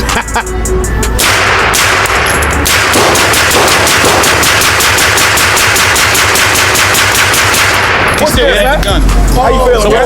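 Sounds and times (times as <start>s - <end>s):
rapid gunfire: 1.2s - 8.2s.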